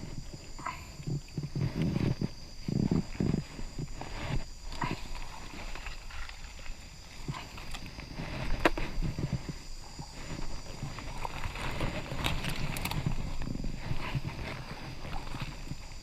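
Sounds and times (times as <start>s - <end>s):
footsteps through undergrowth: 1.5s - 16.0s
twigs snapping: 11.2s - 13.5s.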